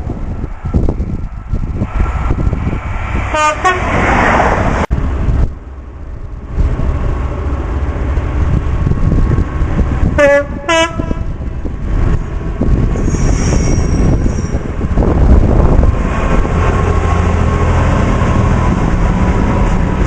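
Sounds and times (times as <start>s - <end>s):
train rumbling: 0.0s - 20.0s
two-tone train horn: 3.3s - 3.9s, 10.2s - 11.4s.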